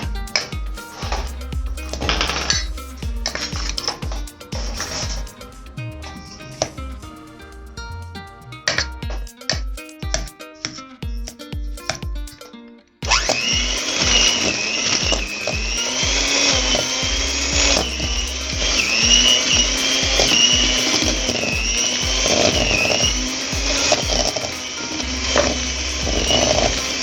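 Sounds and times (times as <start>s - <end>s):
background music with steady beat: 0.0s - 27.0s
electric blender motor whining: 13.0s - 27.0s.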